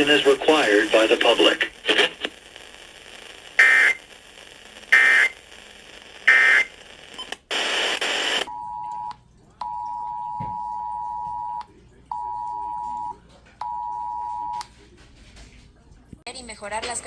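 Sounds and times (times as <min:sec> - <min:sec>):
faint radio hiss: 0:00.0 - 0:08.5
loud radio static: 0:00.0 - 0:08.5.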